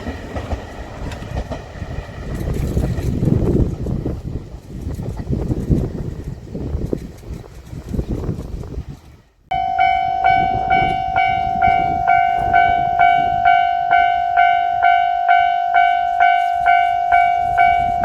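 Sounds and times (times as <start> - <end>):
level crossing warning bell: 9.5 - 18.0.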